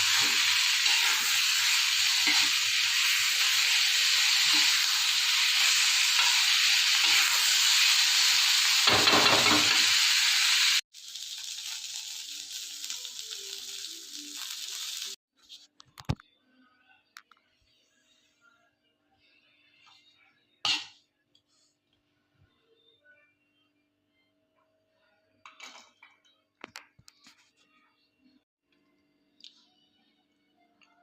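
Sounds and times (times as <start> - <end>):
corn sizzling in a hot pan: 0.0 - 15.2.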